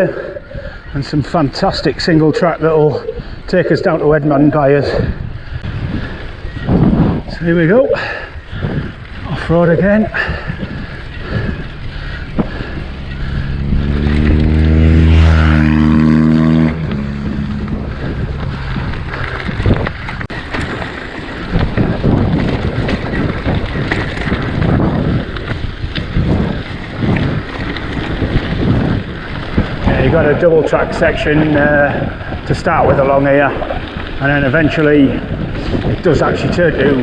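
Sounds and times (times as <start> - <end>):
vehicle engine drone: 0.0 - 5.8, 9.2 - 37.0
bike tyre rumble: 0.0 - 37.0
wind buffeting microphone: 0.0 - 37.0.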